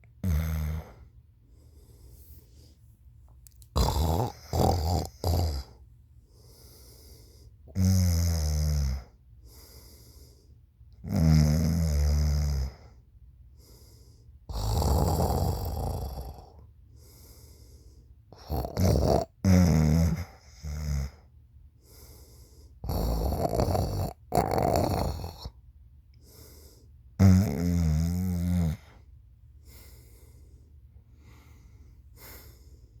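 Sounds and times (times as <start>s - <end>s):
loud snoring: 0.2s - 1.0s, 3.8s - 5.8s, 7.7s - 9.1s, 11.0s - 12.9s, 14.5s - 16.6s, 18.4s - 21.2s, 22.8s - 25.5s, 27.2s - 29.0s.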